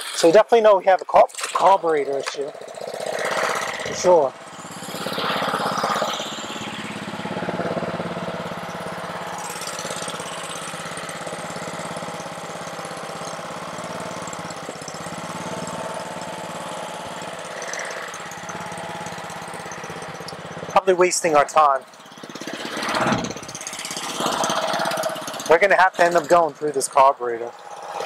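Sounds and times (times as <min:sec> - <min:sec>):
pressure washer engine running: 0:00.0 - 0:28.0.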